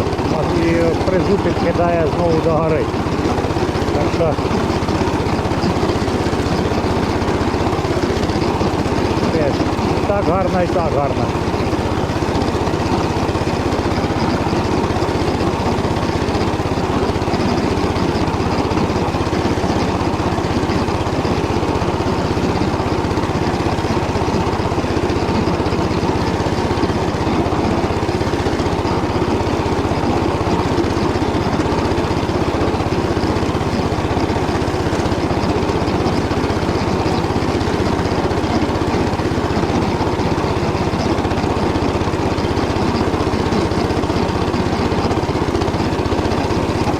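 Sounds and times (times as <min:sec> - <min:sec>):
rotary tiller churning stubble: 0:00.0 - 0:46.9
tractor engine running under load: 0:00.0 - 0:46.9.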